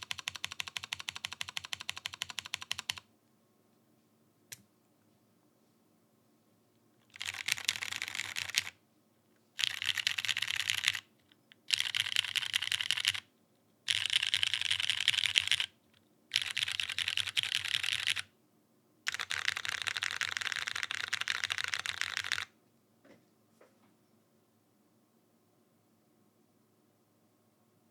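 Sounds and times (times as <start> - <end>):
mechanical keyboard typing: 0.0 - 3.0, 7.1 - 8.8, 9.6 - 13.3, 13.9 - 15.7, 16.3 - 18.3, 19.1 - 22.5.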